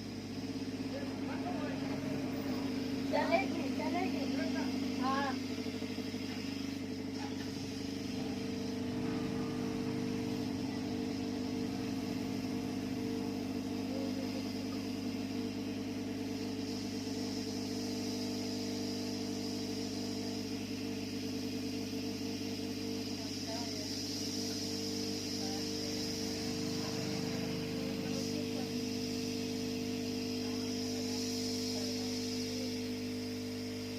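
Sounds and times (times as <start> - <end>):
hot air gun blower humming: 0.0 - 33.9.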